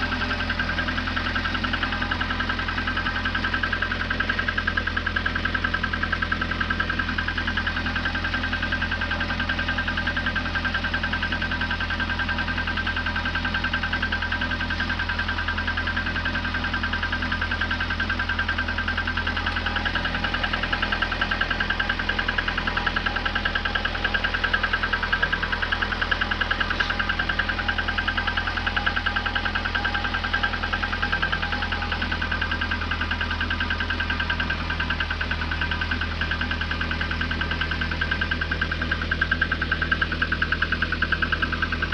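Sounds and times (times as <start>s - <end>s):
engine idling with fast knock: 0.0s - 41.9s.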